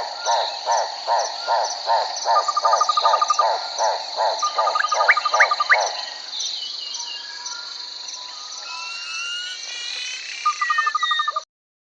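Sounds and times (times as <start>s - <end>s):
insects chorus: 0.0s - 11.4s
whistled bird notes: 7.0s - 11.4s.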